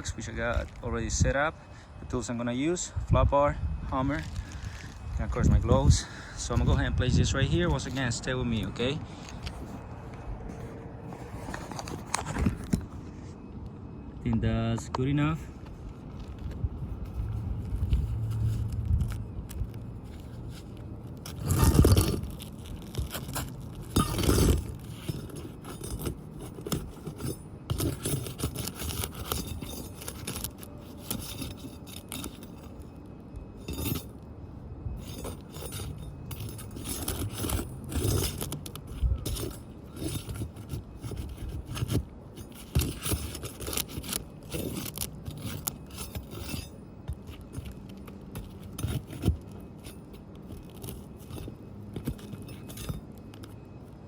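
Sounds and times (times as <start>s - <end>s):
metal clinks: 17.0s - 34.3s, 34.9s - 53.8s
flat bar scraping on shingles: 20.0s - 33.0s, 35.0s - 53.1s.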